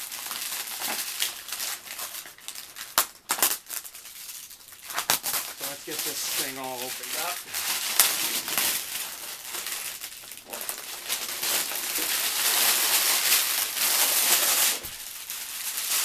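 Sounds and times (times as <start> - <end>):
packaging crinkling: 0.0 - 16.0.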